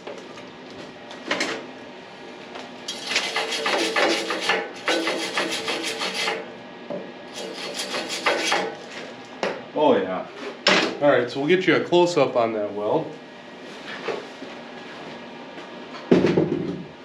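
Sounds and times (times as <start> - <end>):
wire brush scrubbing metal: 2.9 - 6.4, 7.3 - 8.7.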